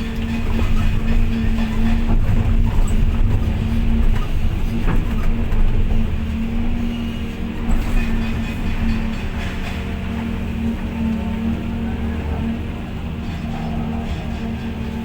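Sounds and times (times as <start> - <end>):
excavator diesel engine drone: 0.0 - 15.0.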